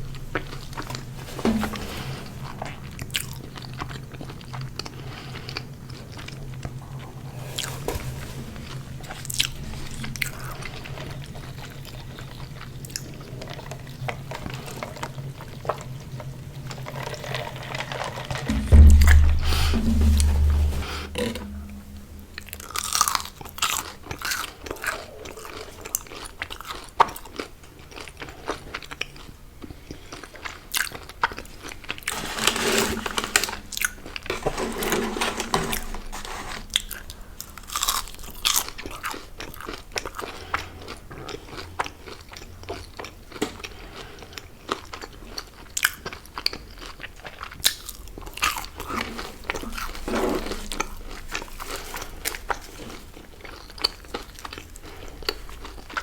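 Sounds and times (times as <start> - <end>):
person chewing crunchy food: 36.7 - 56.0.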